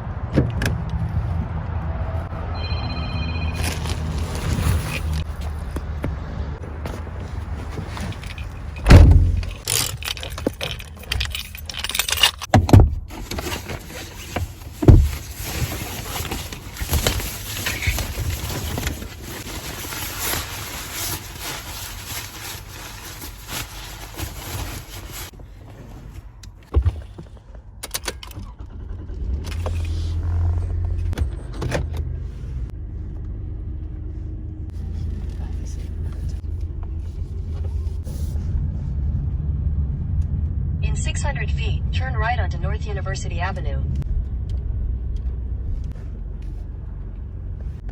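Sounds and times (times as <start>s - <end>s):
low engine rumble: 0.0s - 47.9s
jingling and rustling: 3.1s - 5.6s, 6.7s - 25.3s
heavy door thumps: 8.8s - 9.6s.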